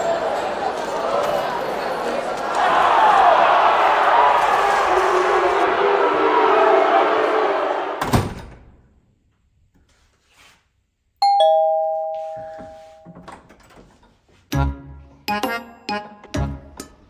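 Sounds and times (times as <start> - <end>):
two-note doorbell chime: 11.2 - 13.2.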